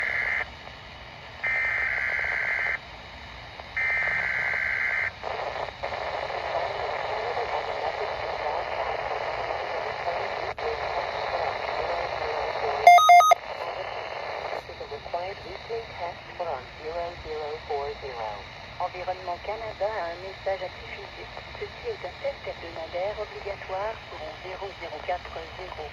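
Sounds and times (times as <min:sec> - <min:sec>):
radio hiss with garbled audio: 0:00.0 - 0:25.9
loud electronic beeps: 0:12.9 - 0:13.4.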